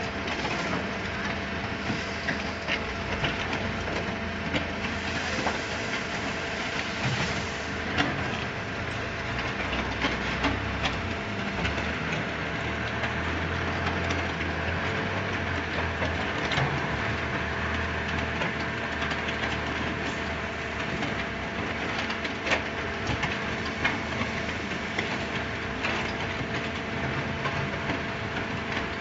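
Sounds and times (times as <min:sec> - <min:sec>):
concrete pump humming: 0:00.0 - 0:29.0.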